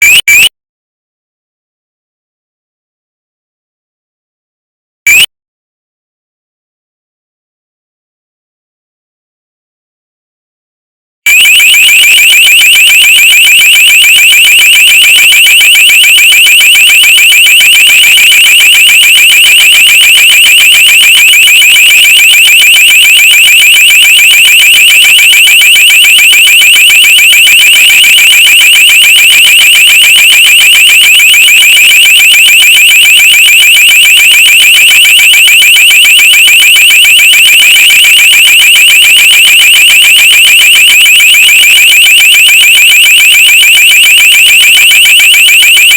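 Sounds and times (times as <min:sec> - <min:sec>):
shrill pulsing electronic alarm: 0:00.0 - 0:00.6, 0:05.0 - 0:05.3, 0:11.2 - 0:45.9.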